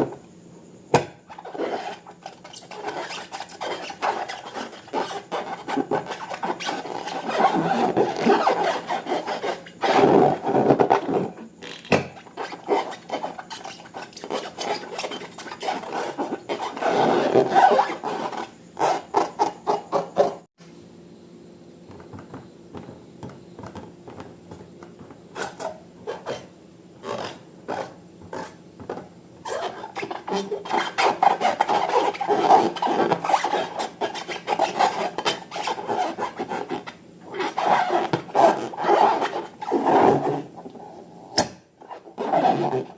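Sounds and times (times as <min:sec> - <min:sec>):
slime rubbing and scraping: 0:01.3 - 0:11.5, 0:12.1 - 0:20.5, 0:25.3 - 0:28.6, 0:29.4 - 0:40.6, 0:41.8 - 0:42.9.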